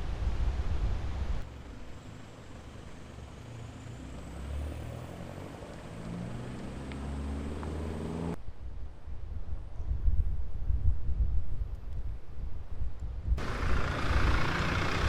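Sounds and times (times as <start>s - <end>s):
engine humming: 1.4s - 8.4s, 13.4s - 15.0s.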